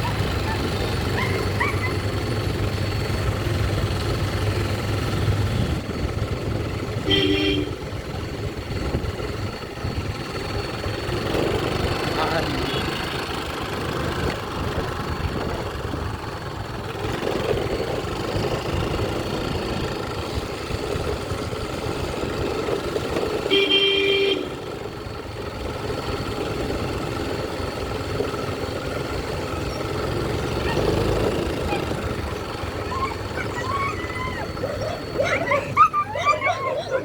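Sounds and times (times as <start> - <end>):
street traffic noise: 0.0 - 37.0
vehicle horn honking: 7.0 - 8.0, 23.4 - 24.6.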